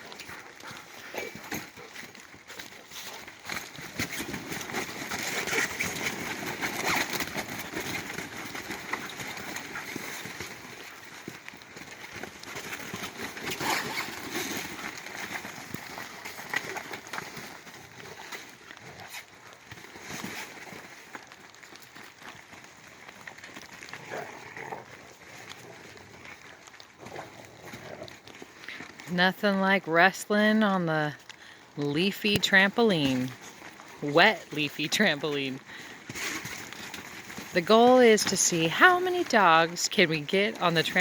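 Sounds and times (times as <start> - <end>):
dog play noises: 0.0 - 22.6
dogs' paws scuffling: 0.0 - 29.2, 31.1 - 41.0.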